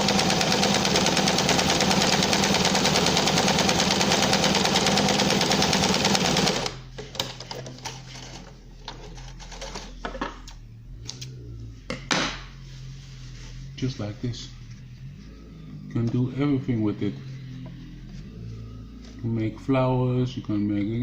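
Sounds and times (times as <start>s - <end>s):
sewing machine stitching: 0.0s - 8.4s
soft handling of fabric: 12.5s - 15.6s.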